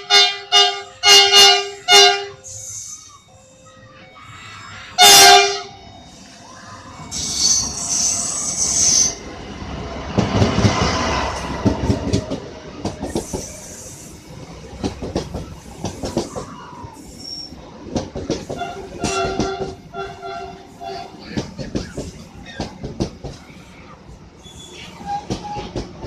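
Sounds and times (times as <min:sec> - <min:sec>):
train wheels squealing: 0:02.3 - 0:09.3, 0:13.0 - 0:14.6, 0:15.3 - 0:17.7, 0:23.4 - 0:25.9
train wheels clacking over rail joints: 0:10.1 - 0:16.6, 0:17.8 - 0:23.5, 0:25.0 - 0:26.0.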